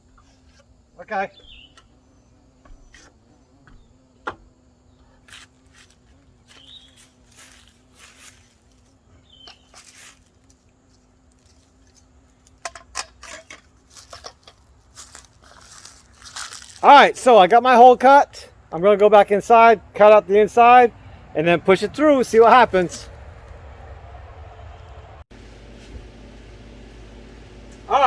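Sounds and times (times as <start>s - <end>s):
objects being handled: 9.4s - 16.8s.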